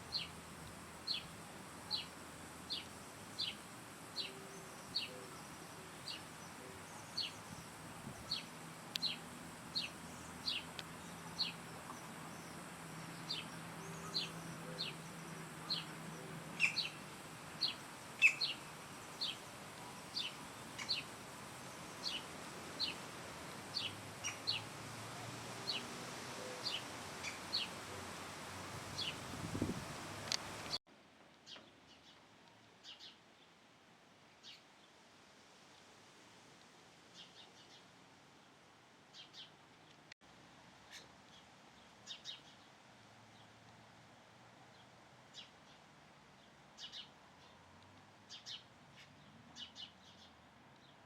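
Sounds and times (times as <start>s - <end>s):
outdoor background hiss: 0.0s - 51.0s.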